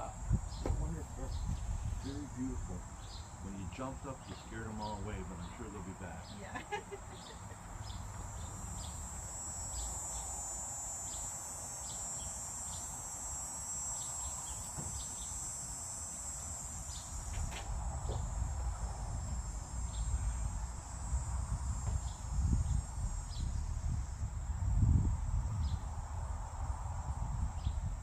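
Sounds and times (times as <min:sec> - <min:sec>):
insects buzzing: 0:00.0 - 0:28.0.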